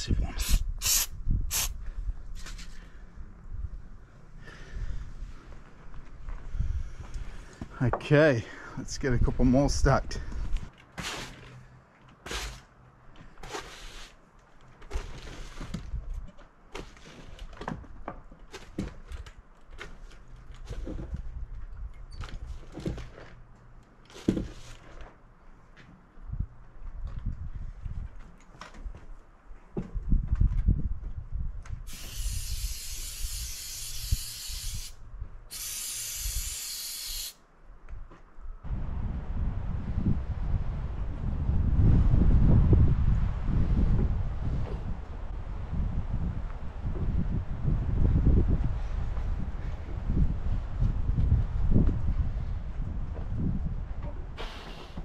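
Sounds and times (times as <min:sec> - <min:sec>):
pressurized spray hissing: 0:00.4 - 0:01.8, 0:31.9 - 0:37.4
wood scraping across wood: 0:10.9 - 0:12.7, 0:13.3 - 0:14.2
low rumble: 0:38.7 - 0:49.6.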